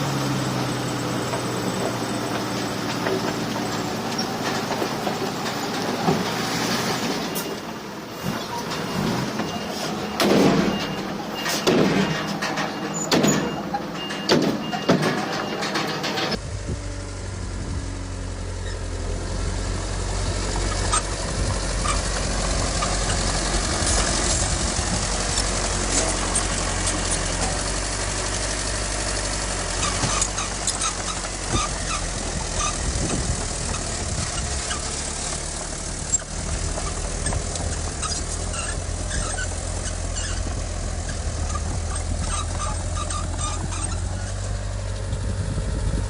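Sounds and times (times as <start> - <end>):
deep diesel engine rumble: 0.0 - 46.0
heavy diesel machinery running: 0.0 - 46.0
reversing alarm beeping: 8.8 - 15.7.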